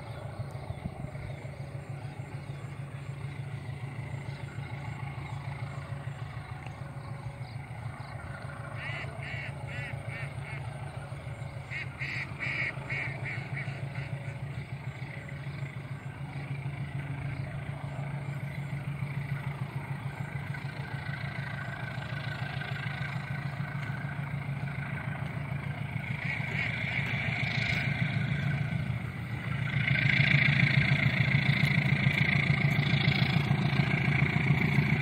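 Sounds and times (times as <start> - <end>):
diesel engine humming: 0.0 - 35.0
quack-like calls: 8.7 - 14.5, 25.9 - 28.7.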